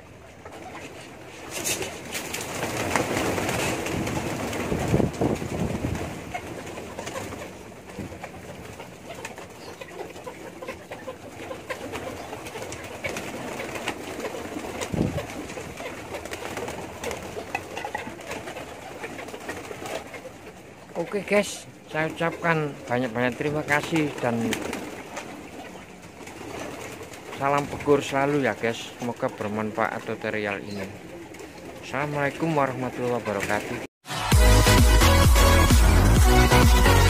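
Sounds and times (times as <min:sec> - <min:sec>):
pigeons cooing: 0:00.0 - 0:33.8
wing flurry: 0:00.4 - 0:33.8.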